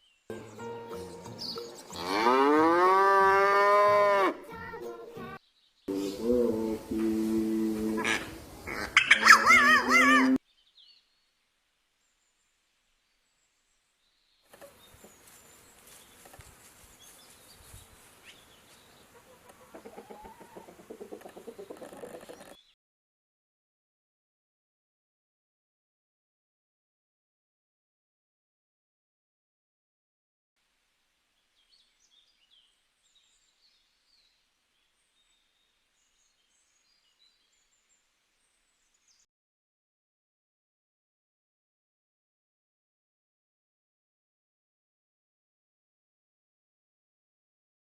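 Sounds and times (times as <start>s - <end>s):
songbird chirps and twitters: 0.0s - 2.5s, 4.5s - 6.4s, 10.4s - 11.4s
noisy farmyard background: 0.0s - 10.7s, 14.4s - 22.8s
chickens clucking: 4.6s - 10.4s, 19.0s - 22.6s.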